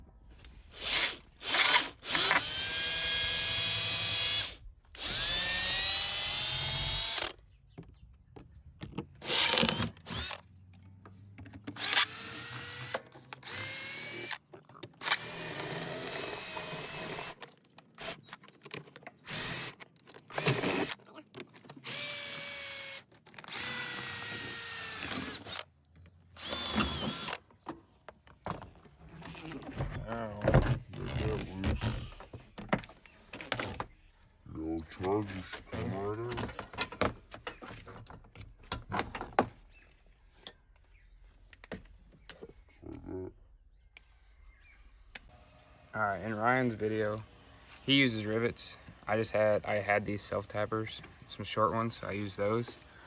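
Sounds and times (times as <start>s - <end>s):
cordless drill motor whine: 0.7s - 7.4s, 9.2s - 10.4s, 11.7s - 14.4s, 15.0s - 17.4s, 18.0s - 18.4s, 19.2s - 21.0s, 21.8s - 25.7s, 26.4s - 27.4s.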